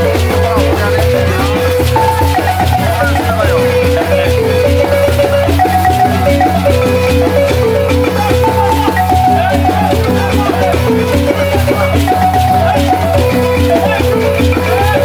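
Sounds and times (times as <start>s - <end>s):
balafon playing fast melody: 0.0s - 15.0s.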